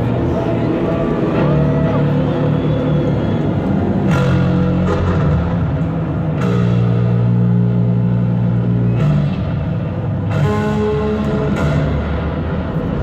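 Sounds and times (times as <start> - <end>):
rock music with guitar chords: 4.1 - 12.7.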